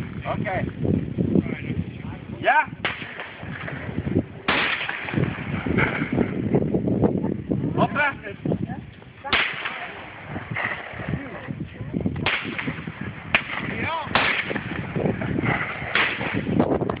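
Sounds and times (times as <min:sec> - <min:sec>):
voices: 0:01.4 - 0:17.0
shotgun bangs: 0:04.5 - 0:06.1, 0:09.3 - 0:10.0, 0:12.2 - 0:16.6.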